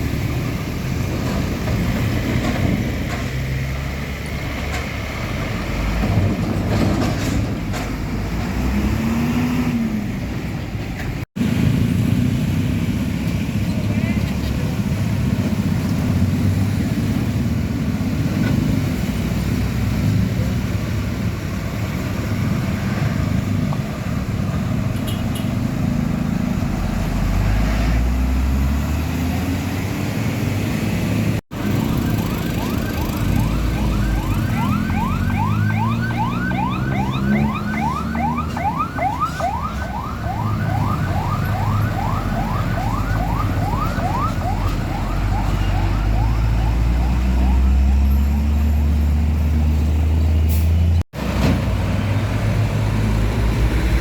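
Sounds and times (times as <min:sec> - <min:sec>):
diesel truck engines running: 0:00.0 - 0:54.0
engine revving: 0:08.2 - 0:10.2
siren yelp: 0:31.5 - 0:48.6.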